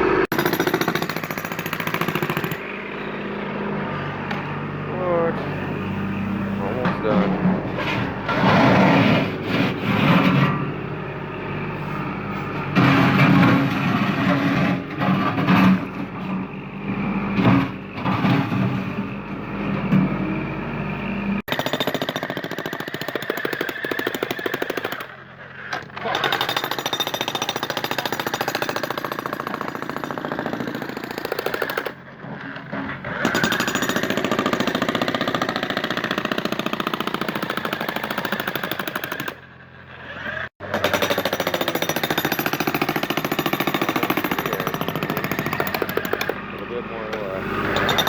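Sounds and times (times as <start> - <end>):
jackhammer pounding concrete: 0.0 - 3.0, 21.5 - 32.0, 33.2 - 39.4, 40.3 - 46.6, 47.5 - 48.0.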